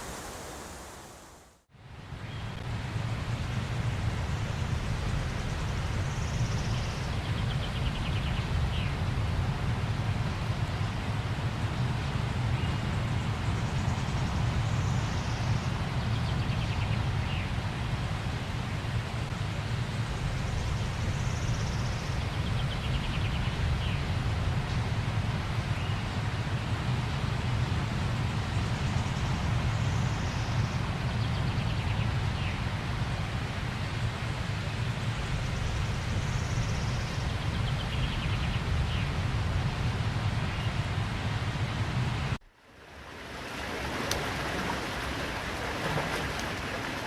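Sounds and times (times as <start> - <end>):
waterfall rushing: 0.0 - 1.6, 42.8 - 47.0.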